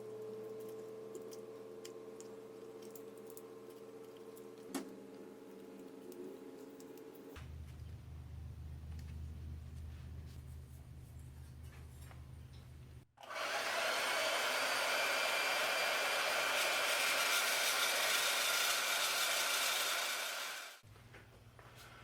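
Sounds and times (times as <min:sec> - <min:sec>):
power tool hissing whine: 0:13.2 - 0:20.8.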